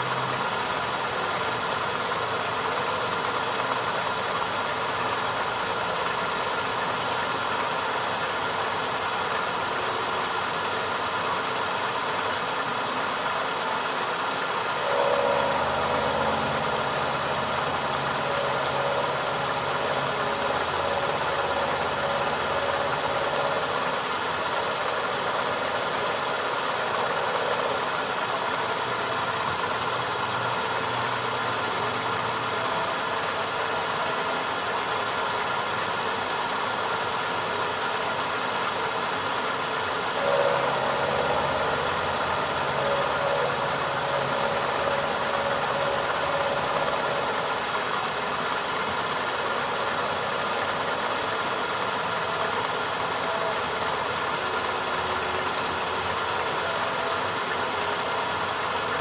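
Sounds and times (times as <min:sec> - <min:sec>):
machine motor running: 0:13.9 - 0:29.7, 0:39.8 - 0:59.0.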